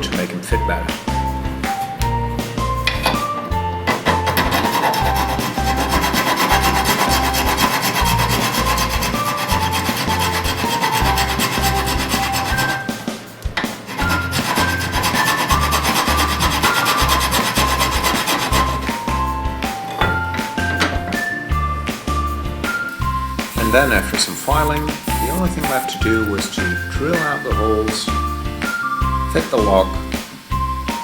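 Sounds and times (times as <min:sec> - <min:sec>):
background music with bass: 0:00.0 - 0:31.0
file rasping on brass: 0:04.0 - 0:12.9, 0:13.9 - 0:19.0, 0:23.4 - 0:26.5.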